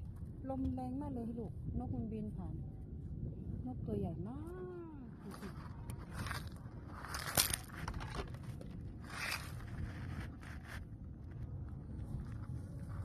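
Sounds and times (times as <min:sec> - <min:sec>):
wind buffeting microphone: 0:00.0 - 0:13.0
handling scrapes: 0:05.2 - 0:10.9.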